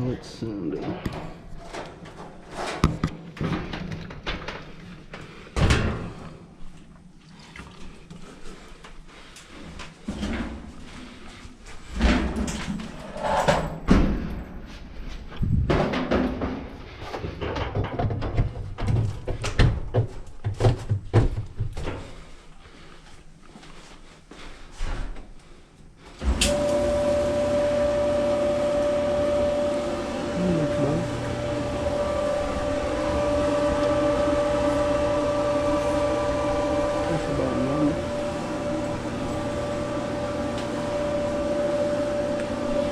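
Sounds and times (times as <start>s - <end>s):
dryer low hum: 21.4s - 42.9s
clothes dryer clanking: 26.2s - 42.9s.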